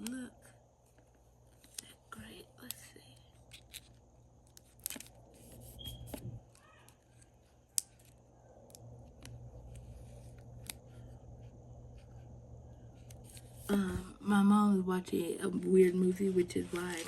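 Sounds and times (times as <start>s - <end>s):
paper and tape rustling: 15.6s - 17.0s.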